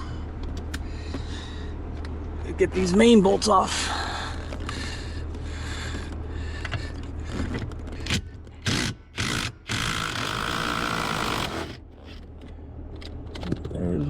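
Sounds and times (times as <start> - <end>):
cordless power tool motor running: 8.6 - 11.8.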